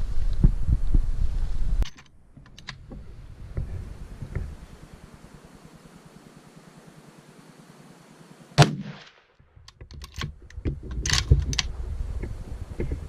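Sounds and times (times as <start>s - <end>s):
sharp clicks and knocks: 1.8s - 4.5s, 9.5s - 13.0s
loud gunshot: 8.6s - 9.3s.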